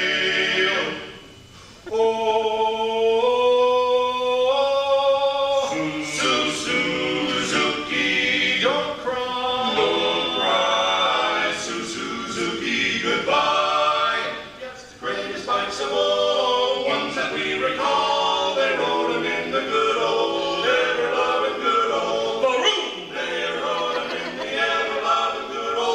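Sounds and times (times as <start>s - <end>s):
barbershop quartet singing: 0.0s - 25.9s.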